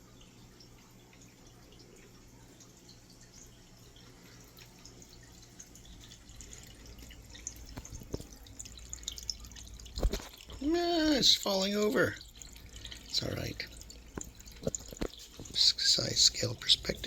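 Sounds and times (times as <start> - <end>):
low steady hum: 0.0 - 17.0
water trickling and dripping: 0.0 - 17.0.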